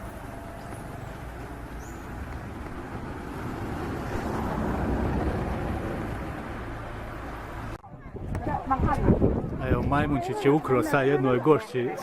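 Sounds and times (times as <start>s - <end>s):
vehicle rumbling by on road: 0.0s - 7.8s.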